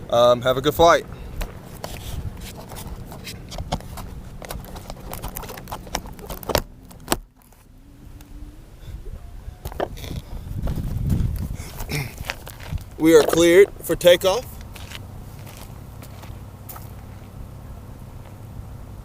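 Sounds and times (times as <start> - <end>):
low hum: 0.0 - 19.0
microphone handling clicks and scrapes: 1.0 - 7.7, 9.1 - 17.1
faint rising tone: 6.6 - 10.5.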